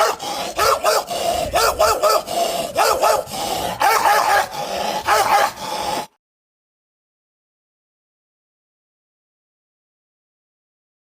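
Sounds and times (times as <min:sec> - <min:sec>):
dog barking angrily: 0:00.0 - 0:06.1.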